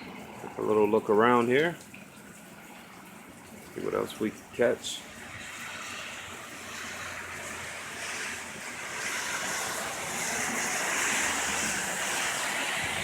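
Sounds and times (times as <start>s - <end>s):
heavy rain falling: 3.8s - 13.0s.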